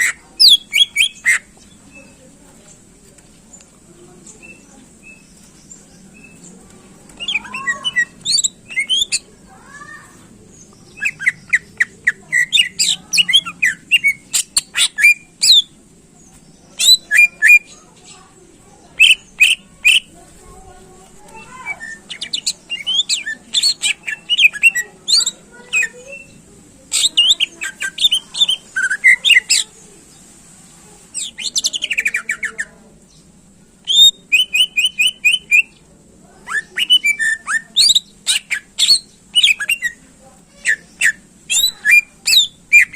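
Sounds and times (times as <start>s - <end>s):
bird singing chirps and whistles: 0.0s - 1.4s, 7.2s - 9.2s, 19.0s - 20.1s, 21.6s - 26.4s, 33.9s - 35.8s, 36.5s - 40.0s, 40.7s - 42.9s.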